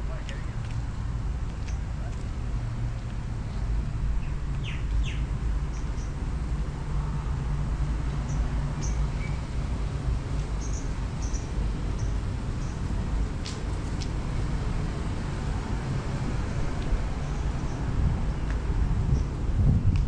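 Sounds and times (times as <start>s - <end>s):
steady low rumble: 0.0s - 20.0s
small birds chirping: 4.2s - 6.2s, 8.2s - 9.5s, 10.6s - 12.8s.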